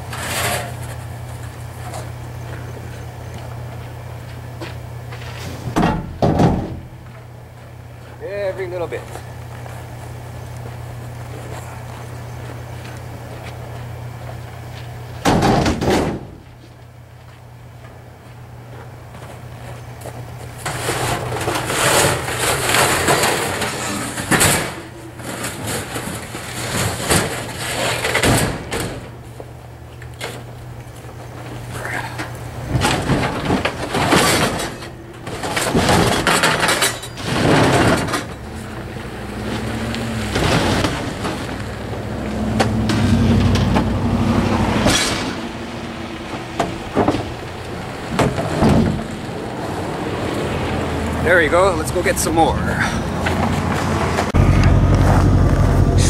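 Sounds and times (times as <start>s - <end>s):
scrap metal clattering into truck bed: 0.0s - 1.1s, 5.1s - 7.0s, 15.2s - 16.4s, 20.6s - 29.2s, 31.8s - 41.9s, 44.7s - 49.2s
truck engine idling: 24.7s - 56.0s.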